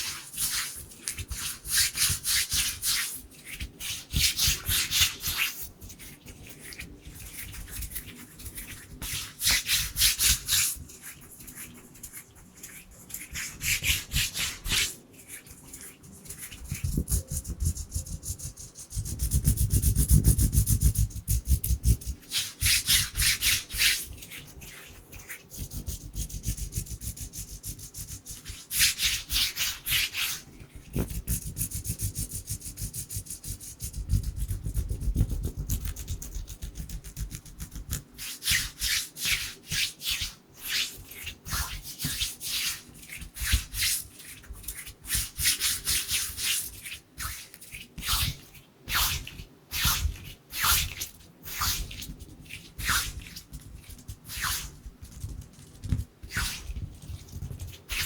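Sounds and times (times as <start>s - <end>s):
hands rubbing together: 0.0s - 58.0s.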